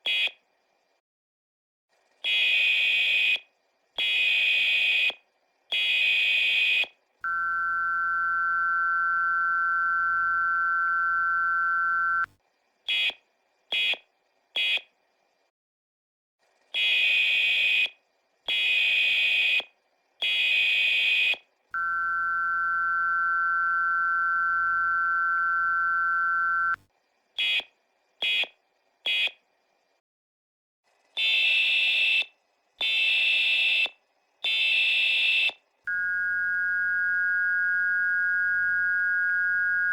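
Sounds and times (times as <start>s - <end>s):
two-tone attention signal: 7.3s - 12.3s, 21.8s - 26.8s.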